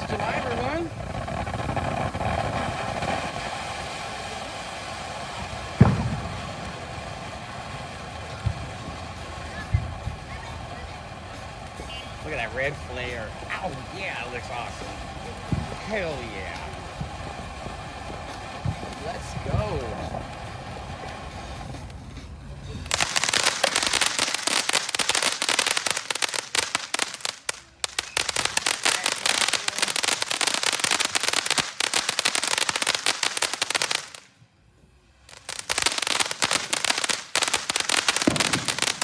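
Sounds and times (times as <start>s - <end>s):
firework fountain crackling: 0.0s - 39.0s.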